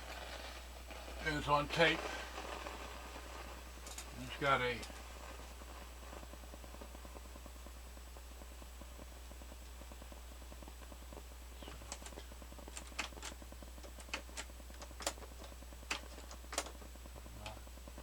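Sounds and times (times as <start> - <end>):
amplifier low hum: 0.0 - 18.0
fast crackle: 0.0 - 18.0
sharp irregular pops: 0.0 - 18.0.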